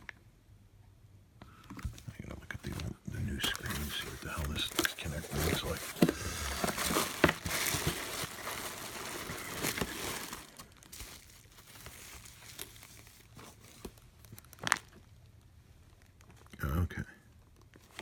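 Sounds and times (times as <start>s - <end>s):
plastic packaging crinkling: 2.6s - 16.6s.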